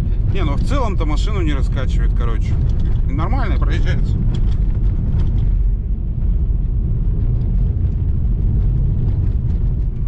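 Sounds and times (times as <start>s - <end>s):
tyres rumbling on rough road: 0.0s - 10.0s.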